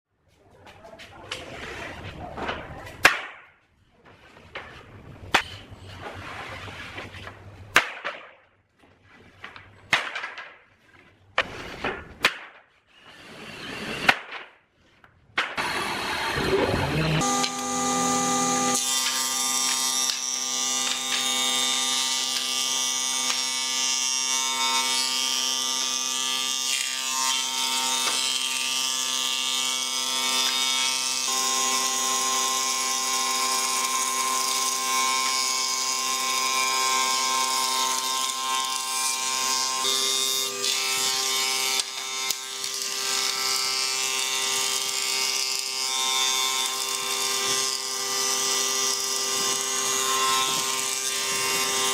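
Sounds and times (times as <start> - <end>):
power tool motor whining: 15.6 - 20.2.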